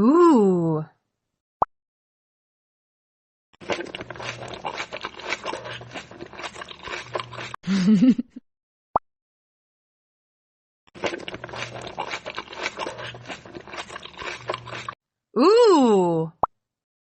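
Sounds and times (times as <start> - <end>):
crunchy chewing: 3.6 - 7.6, 11.0 - 15.0.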